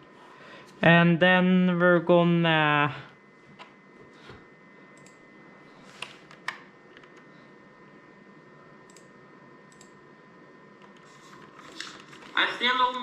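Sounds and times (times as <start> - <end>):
faint electronic whine: 0.0 - 13.0
computer clicks: 5.0 - 5.2, 8.9 - 9.1, 9.7 - 10.0.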